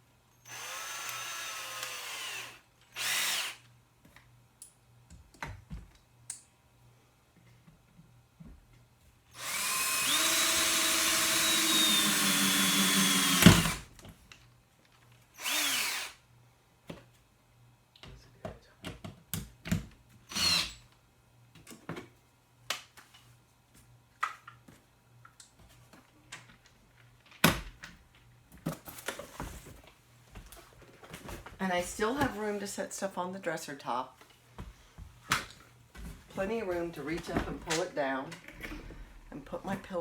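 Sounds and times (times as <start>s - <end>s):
power drill whining: 0.4s - 3.6s, 9.4s - 13.9s, 15.4s - 16.2s, 20.3s - 20.8s.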